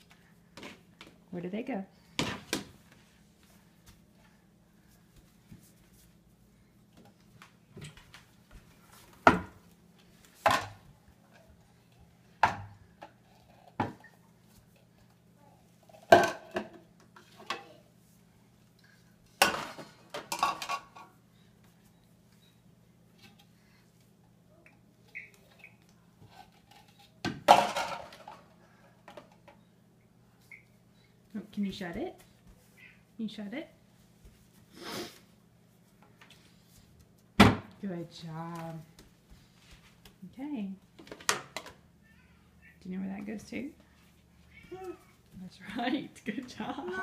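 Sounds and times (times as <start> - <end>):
dishes clattering: 19.4 - 21.1.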